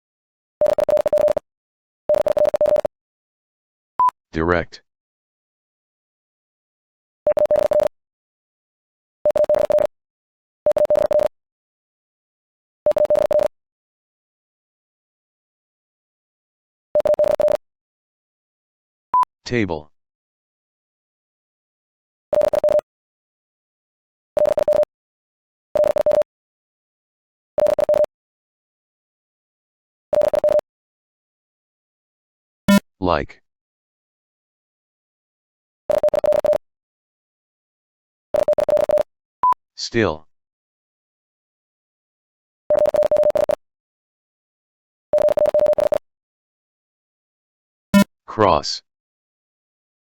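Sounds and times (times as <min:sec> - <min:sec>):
morse code beeps: 0:00.6 - 0:01.4, 0:02.1 - 0:02.9, 0:07.3 - 0:07.9, 0:09.3 - 0:09.9, 0:10.7 - 0:11.3, 0:12.9 - 0:13.5, 0:17.0 - 0:17.6, 0:22.3 - 0:22.8, 0:24.4 - 0:24.9, 0:25.8 - 0:26.3, 0:27.6 - 0:28.1, 0:30.1 - 0:30.6, 0:32.7 - 0:32.9, 0:35.9 - 0:36.6, 0:38.4 - 0:39.6, 0:42.7 - 0:43.6, 0:45.2 - 0:46.0
morse code tone: 0:32.7 - 0:32.9, 0:42.7 - 0:43.6, 0:45.2 - 0:46.0.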